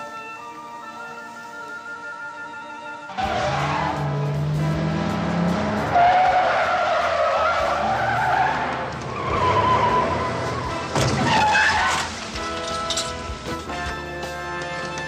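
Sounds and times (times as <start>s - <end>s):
background music: 0.0s - 15.0s
car tyres squealing: 3.1s - 13.2s
car engine: 3.1s - 13.7s.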